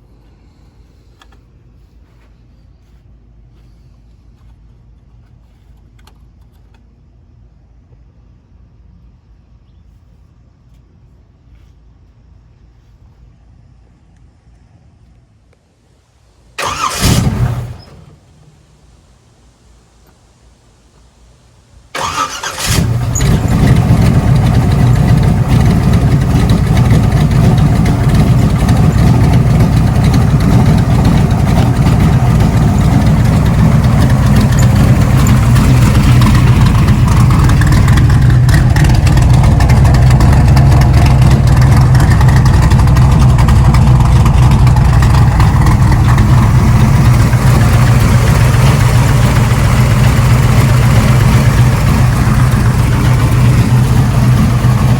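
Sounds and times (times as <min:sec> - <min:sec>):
truck engine starting and idling: 0:00.0 - 0:07.0, 0:16.5 - 0:19.2, 0:21.8 - 0:54.9.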